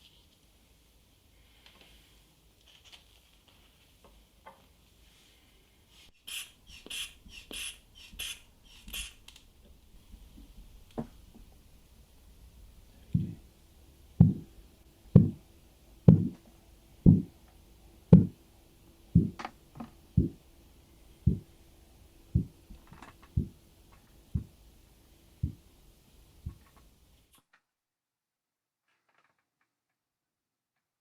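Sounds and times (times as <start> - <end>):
low thumps through stethoscope: 13.2 - 13.4, 14.2 - 14.5, 15.2 - 15.4, 16.1 - 16.4, 17.1 - 17.4, 18.1 - 18.4, 19.2 - 19.5, 20.2 - 20.4, 21.2 - 21.5, 22.4 - 22.6, 23.4 - 23.6, 24.4 - 24.6, 25.4 - 25.6.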